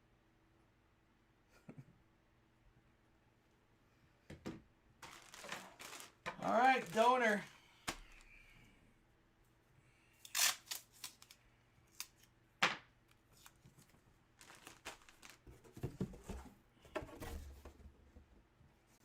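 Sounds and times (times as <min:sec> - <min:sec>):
packaging rustling: 0:05.0 - 0:08.3, 0:13.4 - 0:16.4.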